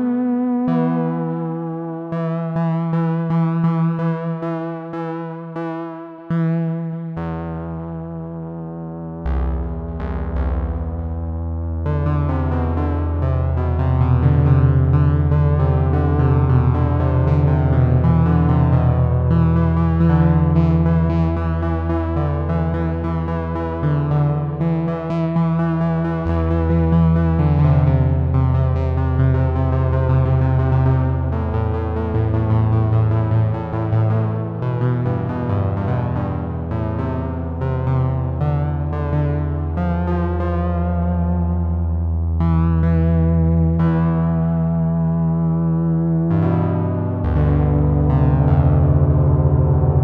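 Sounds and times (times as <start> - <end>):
sustained keyboard chords: 6.3 - 50.0
low synthesizer drone: 8.6 - 50.0.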